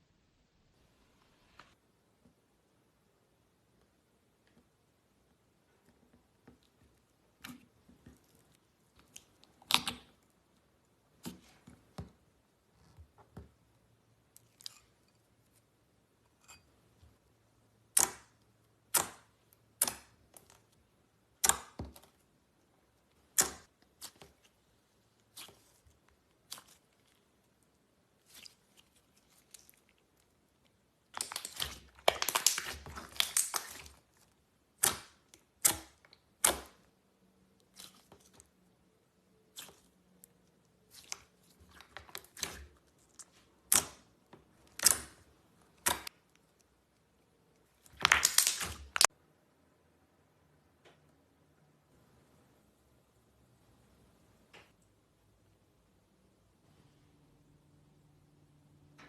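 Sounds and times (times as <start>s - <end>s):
slime clicking and crackling: 25.2s - 36.8s, 40.6s - 47.0s, 47.7s - 49.1s.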